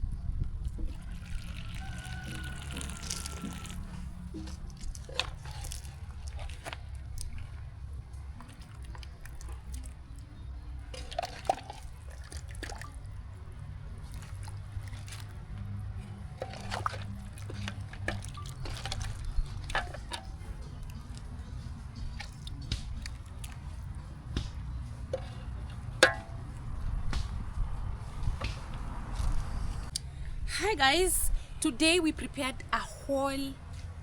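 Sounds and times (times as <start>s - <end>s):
liquid sloshing and dripping: 0.6s - 29.4s
steady low rumble: 25.0s - 32.8s.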